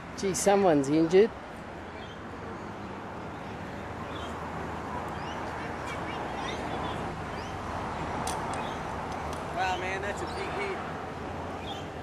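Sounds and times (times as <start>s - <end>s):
roadside traffic: 0.0s - 12.0s
birds chirping: 1.8s - 10.8s, 11.5s - 12.0s.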